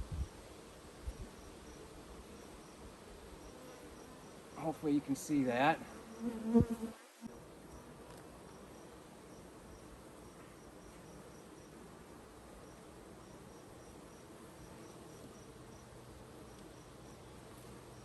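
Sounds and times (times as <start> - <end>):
honeybees humming: 0.3 - 18.0.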